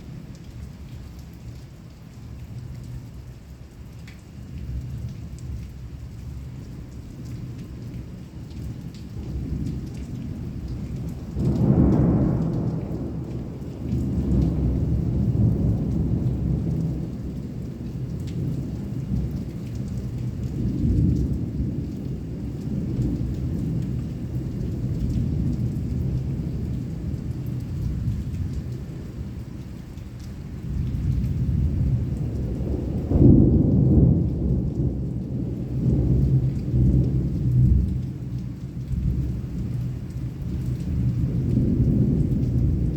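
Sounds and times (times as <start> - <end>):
heavy rain: 0.0 - 42.9
rolling thunder: 9.2 - 29.3, 30.6 - 42.9
loud thunderclap: 11.3 - 17.0, 31.5 - 37.9.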